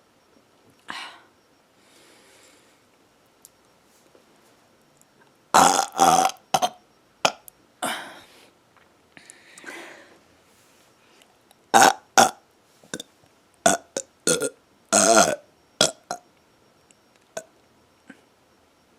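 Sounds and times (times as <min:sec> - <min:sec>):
woman burping: 0:05.6 - 0:08.2, 0:11.7 - 0:12.4, 0:13.7 - 0:16.2.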